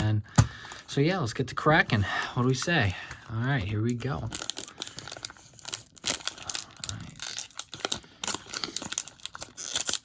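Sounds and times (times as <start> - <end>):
foil wrapper tearing and crinkling: 2.4 - 10.0.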